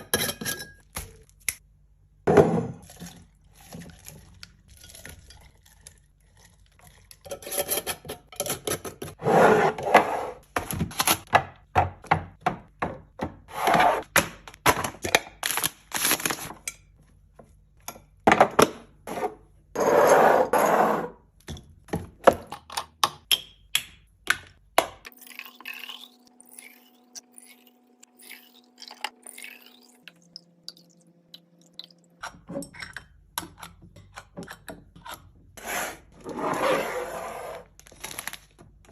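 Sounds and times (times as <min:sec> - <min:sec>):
packaging rustling and scraping: 0:36.2 - 0:38.6.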